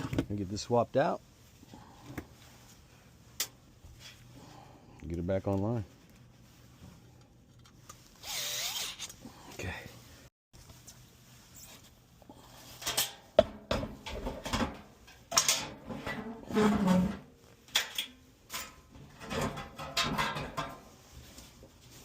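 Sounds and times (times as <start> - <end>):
metal parts clanking and scraping: 12.7 - 13.3, 13.9 - 20.9
rattling scrape: 15.3 - 17.3.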